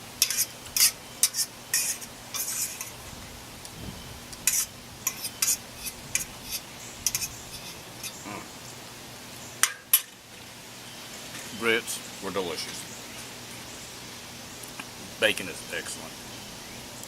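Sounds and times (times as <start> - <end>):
utensil scraping a metal pan: 0.2 - 3.0, 4.4 - 8.2.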